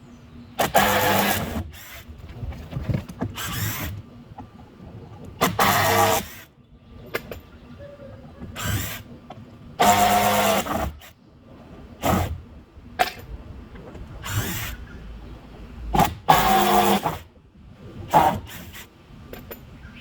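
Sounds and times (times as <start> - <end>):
power drill running: 9.8 - 10.9.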